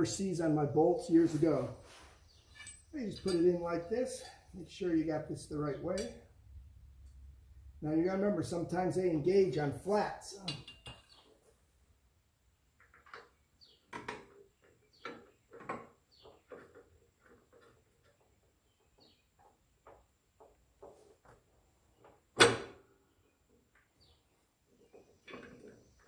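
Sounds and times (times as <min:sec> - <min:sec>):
light metal clinks and taps: 0:02.5 - 0:04.6, 0:05.9 - 0:06.3, 0:10.4 - 0:11.2.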